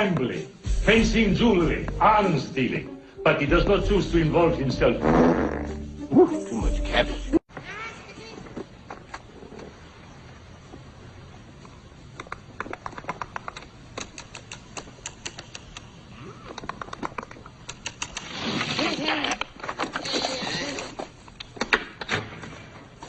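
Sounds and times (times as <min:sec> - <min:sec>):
fast irregular clicking: 0:12.1 - 0:18.4.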